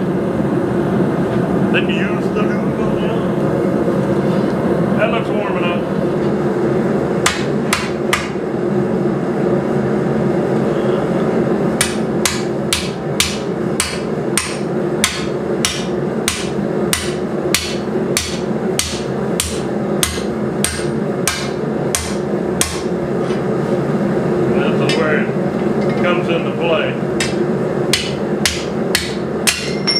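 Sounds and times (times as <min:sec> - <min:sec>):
low hum: 0:00.0 - 0:07.2
hammer striking steel: 0:07.2 - 0:08.4, 0:11.8 - 0:22.9, 0:27.2 - 0:29.9.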